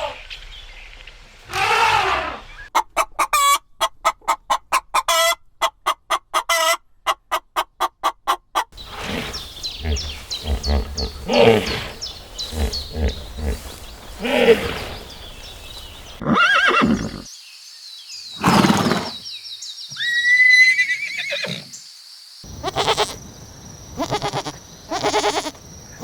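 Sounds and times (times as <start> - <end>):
chickens clucking: 2.7 - 16.2.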